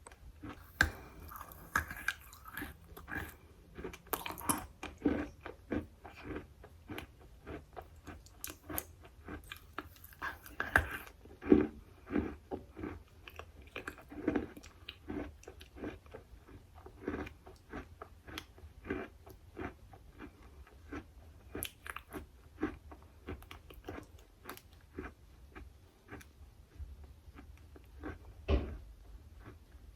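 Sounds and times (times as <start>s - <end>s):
chewing and crunching: 0.0s - 29.9s
thump: 28.5s - 28.8s.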